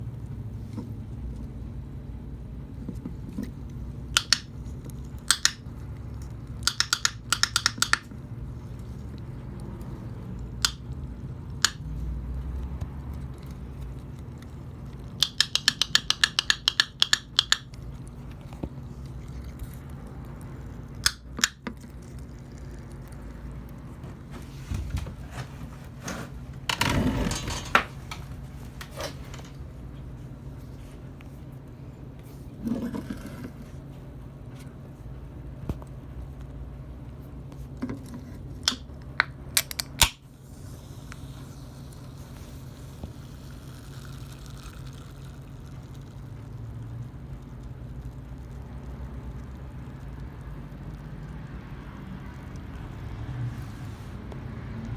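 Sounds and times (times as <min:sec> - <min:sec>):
metal can clicking and popping: 0:04.1 - 0:05.6, 0:06.6 - 0:08.1, 0:15.0 - 0:17.8, 0:21.0 - 0:22.1, 0:38.6 - 0:40.2.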